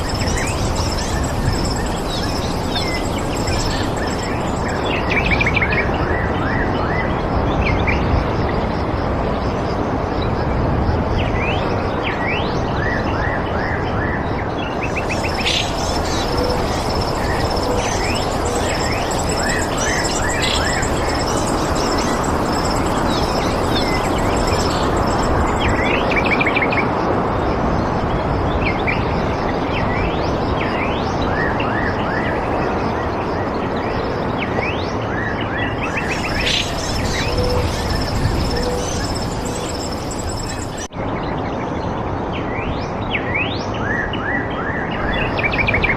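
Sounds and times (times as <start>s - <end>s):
birds chirping: 0.0s - 5.6s, 14.8s - 26.4s, 35.8s - 40.9s
high pulsing trill: 0.0s - 5.6s, 14.8s - 26.4s, 35.9s - 40.9s
steady rushing noise: 0.0s - 6.0s, 14.7s - 28.5s, 35.7s - 40.9s.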